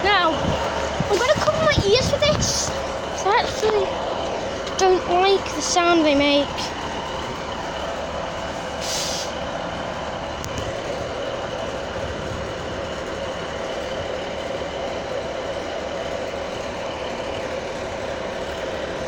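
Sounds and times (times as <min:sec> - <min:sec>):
diesel engines droning: 0:00.0 - 0:19.0
steady whine: 0:00.0 - 0:19.0
air hiss: 0:08.7 - 0:09.4.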